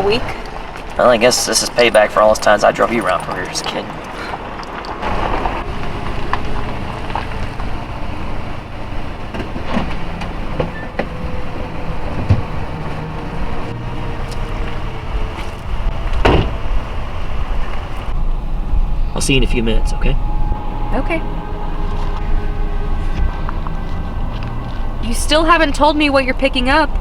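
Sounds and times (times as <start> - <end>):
car engine and road rumble: 0.0 - 27.0
loud thump: 15.4 - 16.8.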